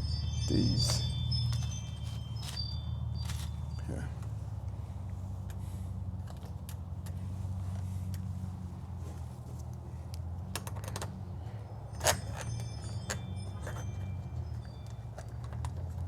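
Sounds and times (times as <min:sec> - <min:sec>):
ringing metallic clink: 0:00.0 - 0:04.4, 0:11.4 - 0:16.0
steady low hum: 0:00.0 - 0:10.5.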